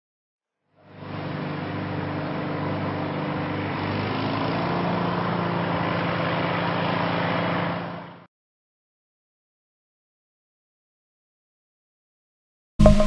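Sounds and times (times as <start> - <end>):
tractor engine running: 0.9 - 8.2.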